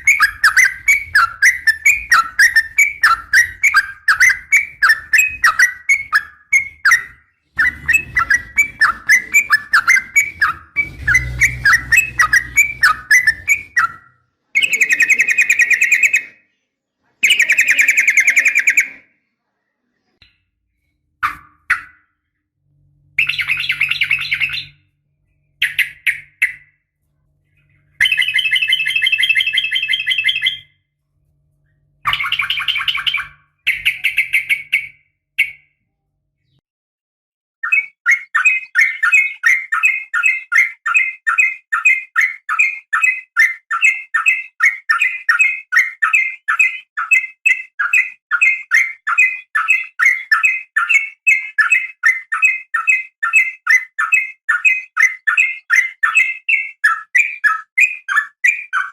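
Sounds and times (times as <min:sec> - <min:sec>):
bird chattering trills: 0:00.0 - 0:16.3.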